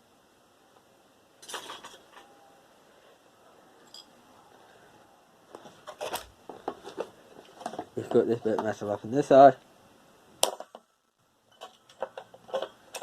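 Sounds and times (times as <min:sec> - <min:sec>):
small metal parts clinking: 0:01.4 - 0:02.3, 0:03.8 - 0:04.2, 0:11.5 - 0:13.0.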